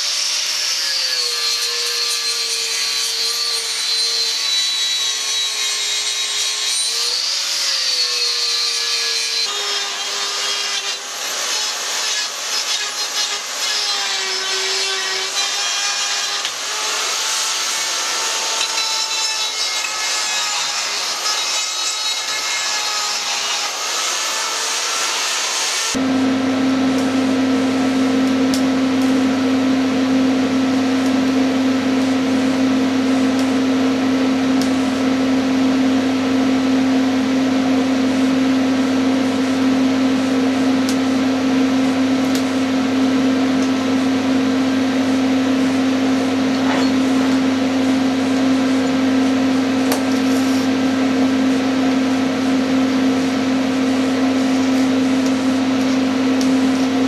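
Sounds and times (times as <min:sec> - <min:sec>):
welding equipment humming: 0:25.9 - 0:57.0.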